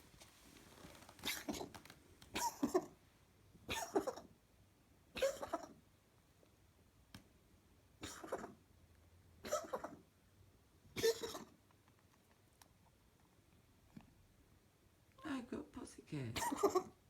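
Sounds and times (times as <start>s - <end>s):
cat coughing: 1.2s - 1.7s, 2.3s - 3.0s, 3.6s - 4.4s, 5.1s - 5.8s, 8.0s - 8.6s, 9.4s - 10.1s, 10.9s - 11.6s, 16.3s - 17.0s.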